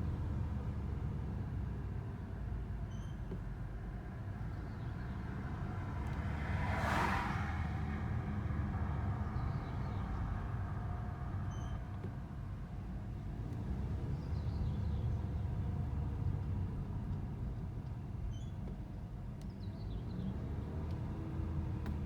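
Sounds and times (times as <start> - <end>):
vehicle low rumble: 0.0 - 22.0
short high squeaks: 18.2 - 18.6.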